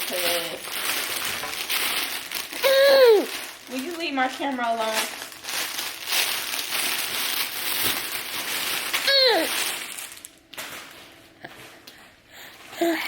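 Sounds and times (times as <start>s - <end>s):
baby squealing: 2.6s - 3.4s, 9.1s - 9.6s.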